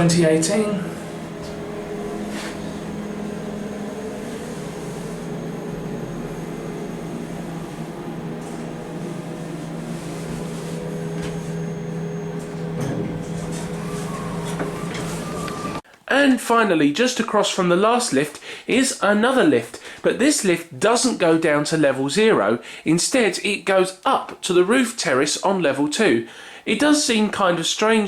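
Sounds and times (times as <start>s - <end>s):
lift car humming: 0.0s - 15.8s.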